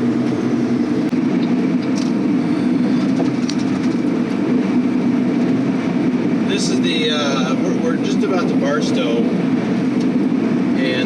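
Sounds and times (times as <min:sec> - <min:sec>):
truck road and engine rumble: 0:00.0 - 0:11.0
faint clicks and rattles: 0:03.1 - 0:04.1.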